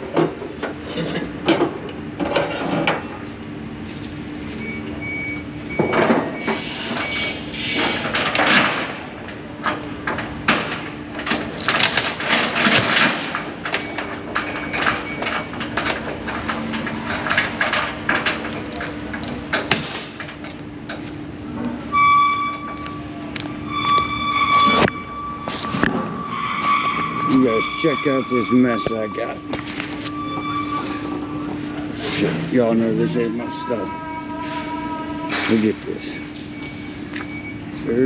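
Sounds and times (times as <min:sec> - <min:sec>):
knocks and clanks: 0:00.0 - 0:03.2, 0:05.7 - 0:33.7
steady low hum: 0:08.7 - 0:38.0.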